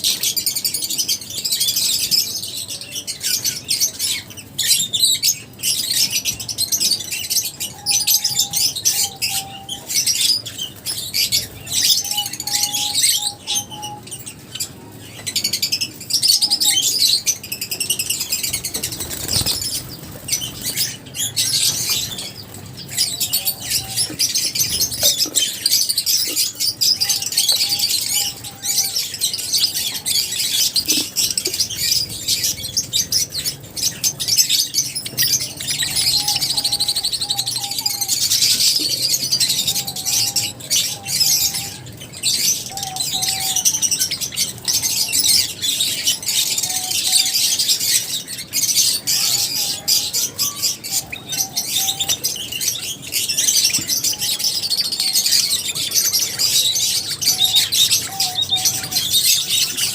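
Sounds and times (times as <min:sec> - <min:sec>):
lovebirds chirping: 0:00.0 - 0:59.9.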